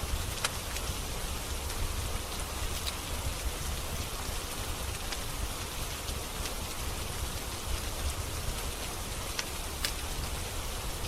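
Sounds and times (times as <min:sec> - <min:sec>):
steady rain hiss: 0:00.0 - 0:11.0
wood fire crackling pops: 0:00.2 - 0:00.9, 0:09.2 - 0:10.4.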